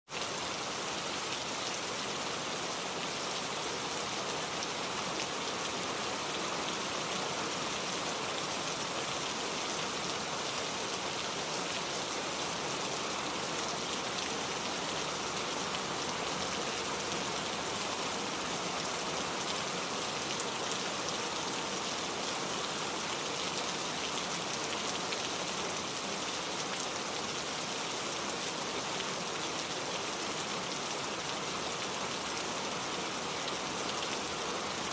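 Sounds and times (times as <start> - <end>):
steady rain pattering: 0.1 - 34.9.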